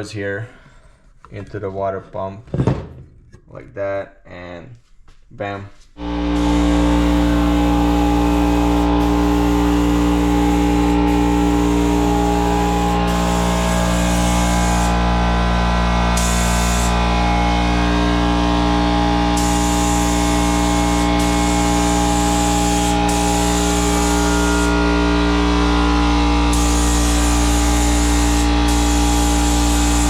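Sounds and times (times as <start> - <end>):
air supply motor drone: 6.0 - 30.0
paint spray gun hissing: 6.4 - 15.0, 16.1 - 17.1, 19.3 - 24.8, 26.5 - 30.0.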